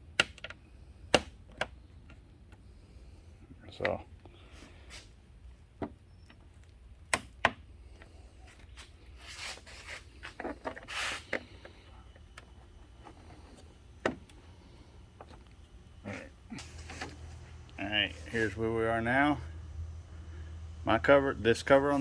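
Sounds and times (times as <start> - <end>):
plastic clicks and snaps: 0.1 - 2.6
scraping and rustling: 8.5 - 11.8, 14.6 - 18.6.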